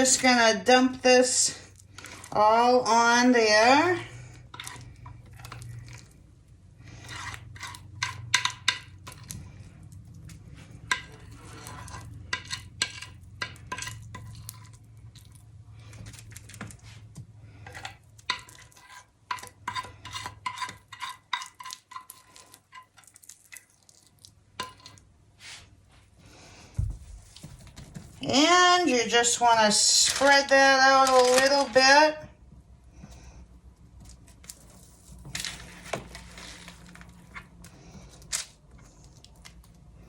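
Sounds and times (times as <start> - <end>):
spoon scraping a dish: 0.0 - 6.2, 6.8 - 15.3, 16.0 - 23.7, 24.6 - 25.7.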